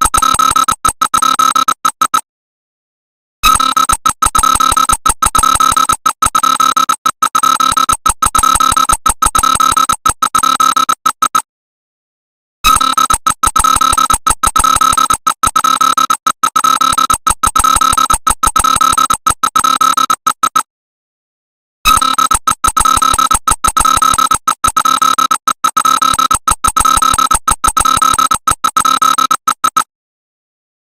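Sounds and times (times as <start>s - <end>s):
electronic emergency alarm tone: 3.4s - 11.4s, 12.7s - 20.6s, 21.9s - 29.9s.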